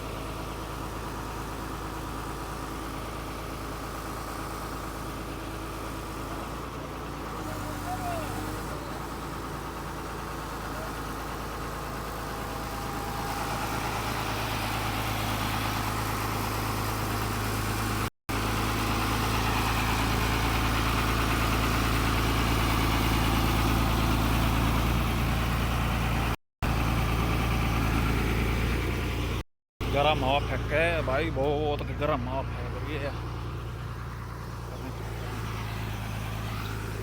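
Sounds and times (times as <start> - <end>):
excavator diesel engine humming: 0.0 - 37.0.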